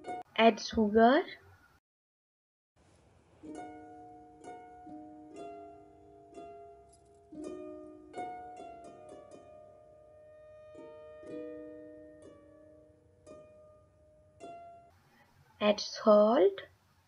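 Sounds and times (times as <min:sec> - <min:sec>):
plucked string melody: 0:00.0 - 0:00.3, 0:03.4 - 0:15.0.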